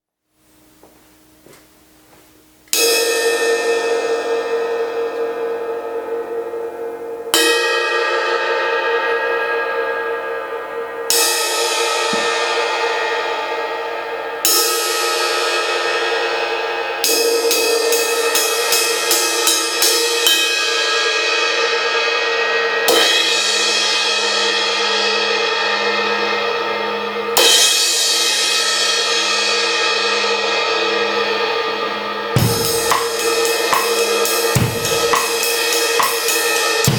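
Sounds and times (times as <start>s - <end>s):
cymbal ridden with even strokes: 2.7s - 36.9s
crash cymbal ringing: 27.4s - 36.9s.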